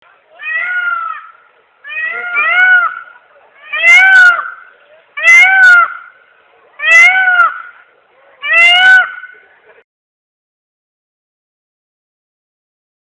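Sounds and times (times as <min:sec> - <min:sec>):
peacock calling: 0:00.3 - 0:09.8.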